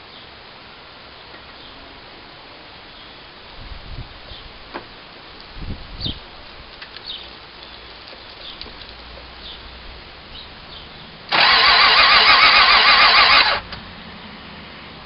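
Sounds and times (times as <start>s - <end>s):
engine cranking by starter motor: 11.3s - 13.8s.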